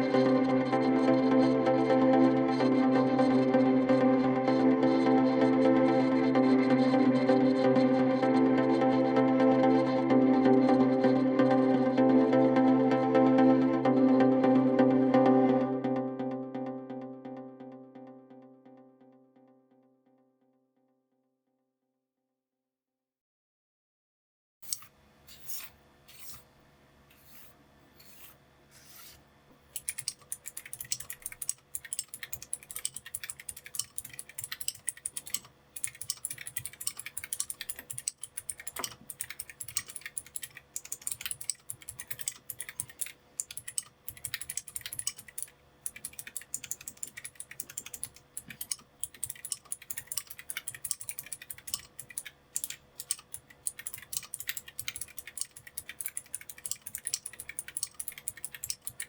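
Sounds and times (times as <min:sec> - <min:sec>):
mechanical keyboard typing: 0:29.8 - 0:59.0.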